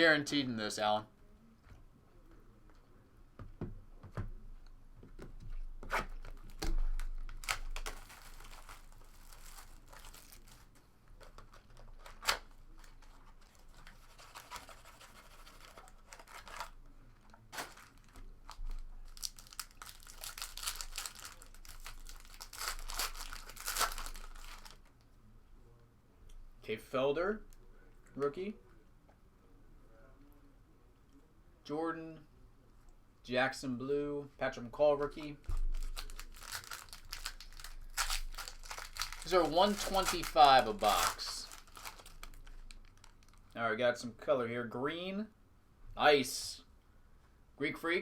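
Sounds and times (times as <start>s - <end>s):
wrappers tearing and crinkling: 7.2s - 24.9s, 35.7s - 43.5s.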